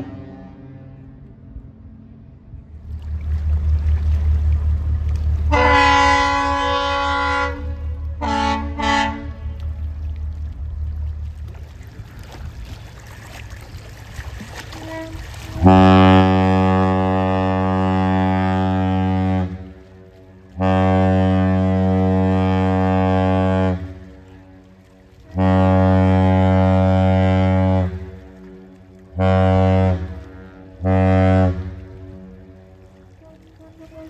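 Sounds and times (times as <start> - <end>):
ship air horn blasts: 0.0 - 1.4, 4.6 - 10.2, 14.6 - 34.0
low rumble: 0.0 - 34.0.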